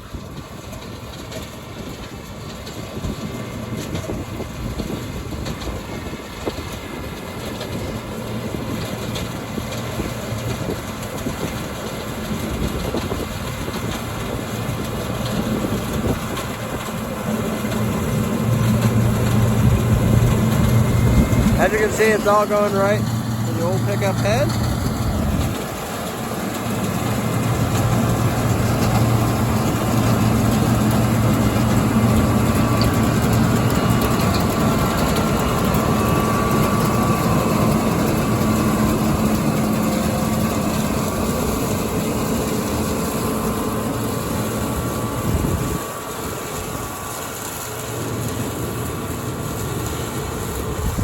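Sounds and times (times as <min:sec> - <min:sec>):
combine harvester engine hum: 0:00.0 - 0:51.0
rush of machinery: 0:00.2 - 0:51.0
wind noise: 0:01.8 - 0:42.4, 0:44.8 - 0:46.0, 0:50.4 - 0:51.0.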